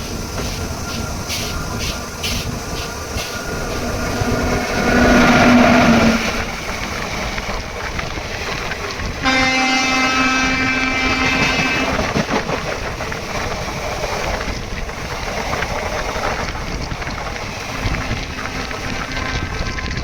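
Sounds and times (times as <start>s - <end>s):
train rumbling: 0.0s - 20.0s
train horn: 3.2s - 6.6s, 9.2s - 12.2s, 18.2s - 20.0s.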